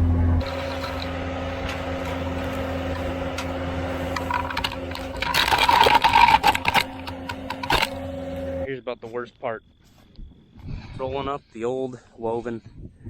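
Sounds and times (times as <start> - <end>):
engine humming: 0.0 - 8.7
rapid metallic clicks and rattles: 0.4 - 8.6.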